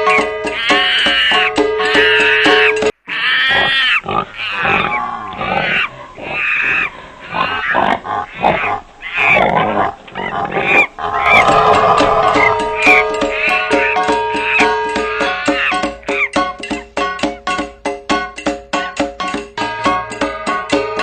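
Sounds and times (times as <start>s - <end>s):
pig squealing: 0.0s - 16.6s
gong music: 11.2s - 15.4s.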